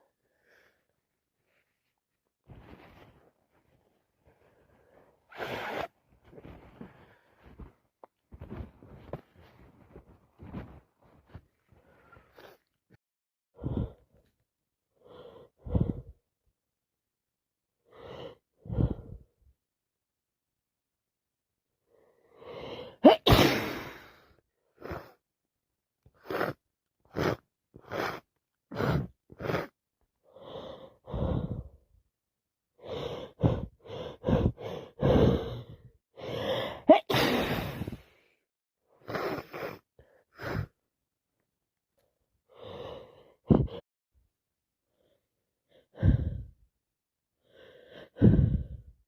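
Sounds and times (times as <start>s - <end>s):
gasping in-breaths: 15.0s - 16.2s, 17.9s - 19.3s, 26.2s - 31.9s, 32.8s - 38.3s, 42.5s - 43.8s, 44.9s - 46.6s, 47.4s - 49.0s
person sneezing: 23.0s - 24.2s, 36.8s - 38.0s.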